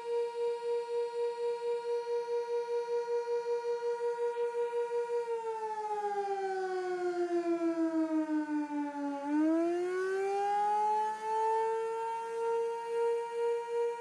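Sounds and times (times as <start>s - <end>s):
warning siren: 3.4s - 14.0s.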